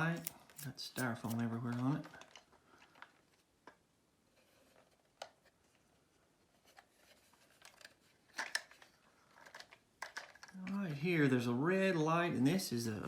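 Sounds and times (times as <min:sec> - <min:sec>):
plastic toy clicks and rubs: 0:00.0 - 0:03.4, 0:06.6 - 0:10.7.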